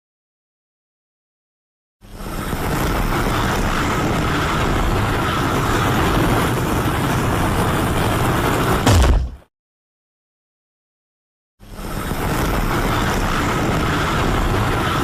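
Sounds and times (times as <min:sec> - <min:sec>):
sharp knock with low thump: 0:08.8 - 0:09.5.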